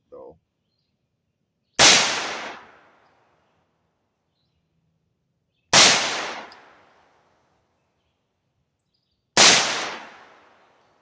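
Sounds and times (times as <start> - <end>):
rifle shots: 1.8 - 3.0, 5.7 - 7.0, 9.4 - 10.8
gunshot echo: 1.8 - 3.1, 5.7 - 7.1, 9.4 - 10.8.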